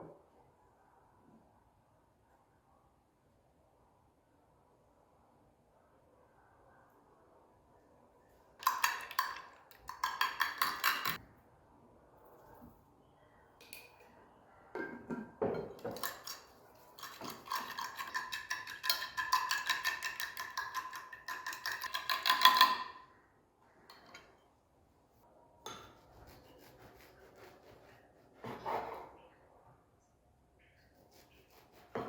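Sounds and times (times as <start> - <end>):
utensil stirring in a bowl: 8.6 - 11.2, 15.6 - 23.0
kitchenware knocks: 14.8 - 16.1.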